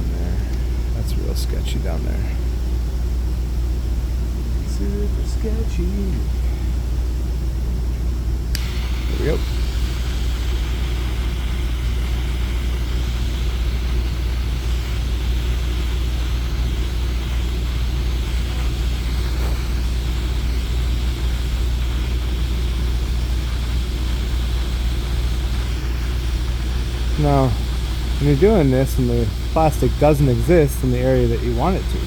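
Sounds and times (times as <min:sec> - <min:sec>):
torch burning with rumble and hiss: 0:00.0 - 0:32.0.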